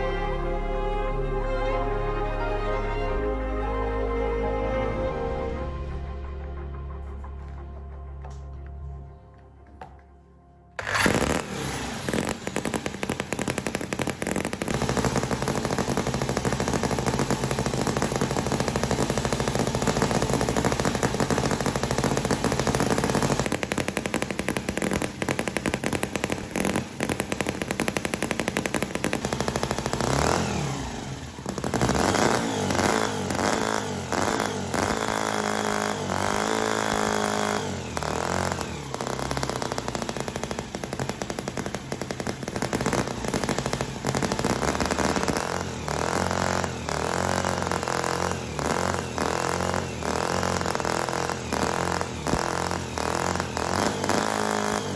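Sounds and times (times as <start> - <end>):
engine revving: 10.8 - 54.9.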